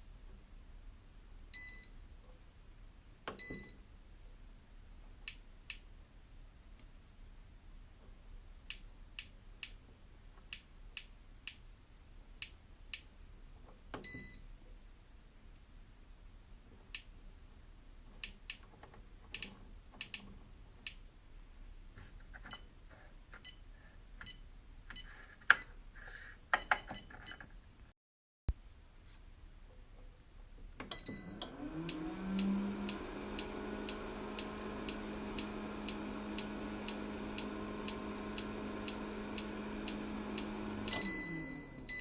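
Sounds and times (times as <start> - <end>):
microwave control clicks: 30.8 - 42.0
short electronic beeps: 40.9 - 42.0.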